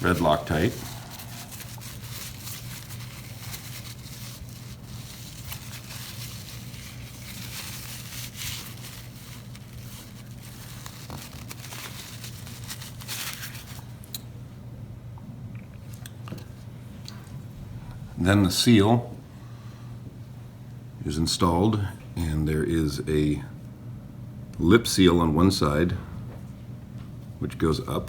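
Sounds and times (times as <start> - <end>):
wipe rubbing and crinkling: 0.0 - 13.9
steady low hum: 0.0 - 28.0.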